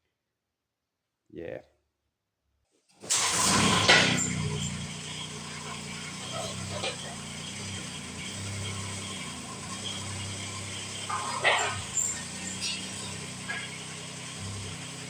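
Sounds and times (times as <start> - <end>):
metal clanks and rattles: 3.1 - 14.9
low mechanical hum: 3.1 - 15.0.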